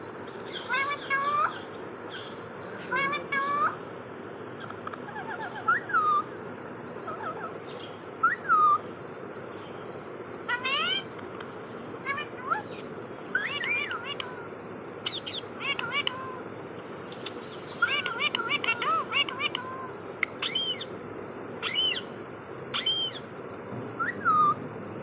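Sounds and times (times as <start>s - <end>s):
parrots chattering: 0.4s - 3.8s, 4.6s - 6.4s, 7.0s - 8.8s, 10.4s - 11.2s, 12.0s - 21.0s, 21.6s - 23.3s, 24.0s - 24.6s
high squawks: 4.6s - 6.4s, 10.5s - 11.1s, 12.0s - 21.0s, 21.6s - 23.3s.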